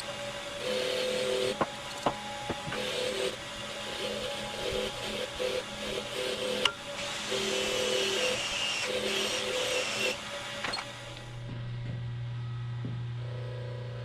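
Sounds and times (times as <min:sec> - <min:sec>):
handheld power tool whining bursts: 0:04.1 - 0:10.9.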